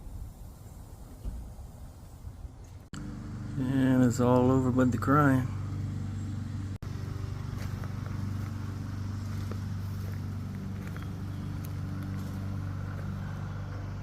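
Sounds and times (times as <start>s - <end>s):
diesel engine running: 2.9s - 14.0s.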